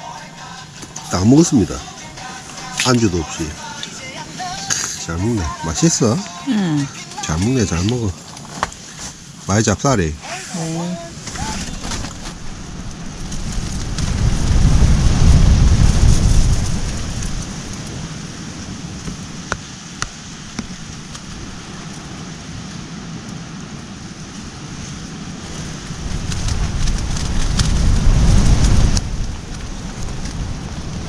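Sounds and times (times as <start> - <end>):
strong wind on microphone: 11.0 - 31.0.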